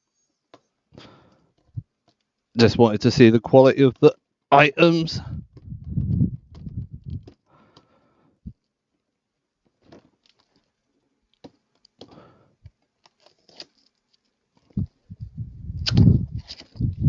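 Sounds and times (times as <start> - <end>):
close-up rubbing and rustling: 5.1 - 7.4, 12.7 - 17.0
packaging clicks and rustles: 9.8 - 14.8.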